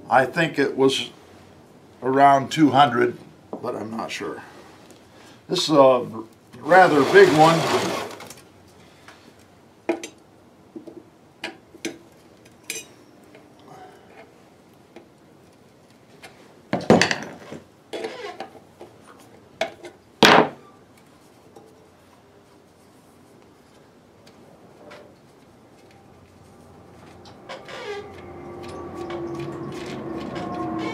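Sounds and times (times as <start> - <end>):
metal scraping clanks: 27.0 - 30.9.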